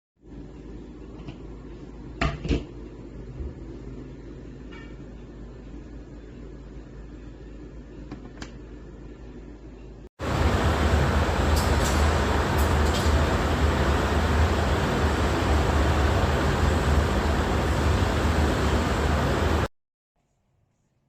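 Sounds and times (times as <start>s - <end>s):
washing machine churning: 10.2s - 19.7s
washing machine motor hum: 10.2s - 19.7s.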